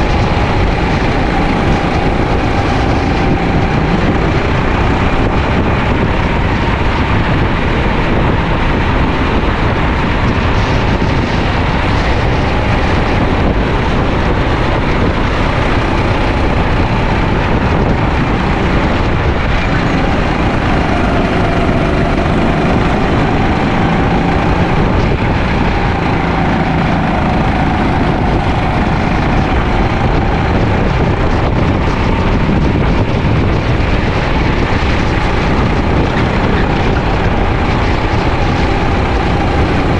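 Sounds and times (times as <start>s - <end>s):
kart engine racing: 0.0s - 39.9s
wind buffeting microphone: 0.0s - 39.9s.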